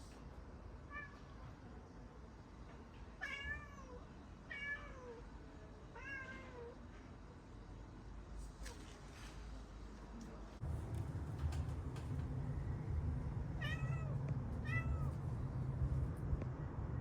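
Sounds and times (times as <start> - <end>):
cat meowing: 3.2 - 5.2, 6.0 - 6.8, 13.6 - 15.2.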